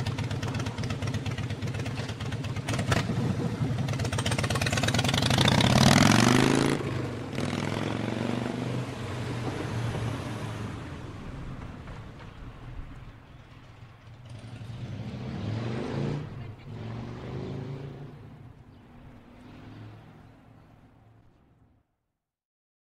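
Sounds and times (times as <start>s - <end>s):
motorcycle engine revving: 0.0s - 11.0s, 14.0s - 18.4s.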